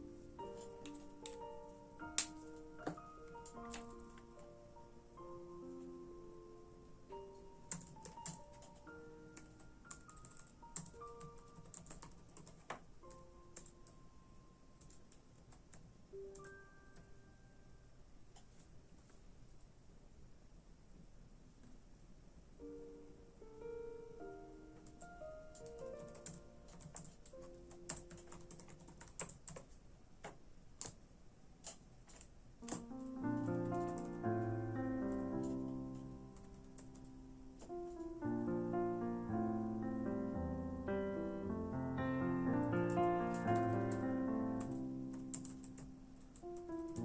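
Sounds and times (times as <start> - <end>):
soft background music: 0.0 - 18.1, 22.6 - 29.3, 32.6 - 47.0
computer keyboard typing: 7.7 - 14.0, 14.8 - 16.6, 24.8 - 31.0, 31.6 - 38.0, 42.6 - 47.0.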